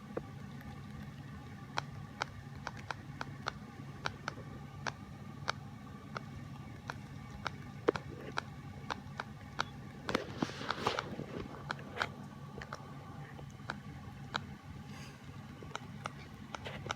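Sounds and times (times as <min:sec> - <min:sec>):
bird imitating keyboard typing: 0:02.2 - 0:09.8.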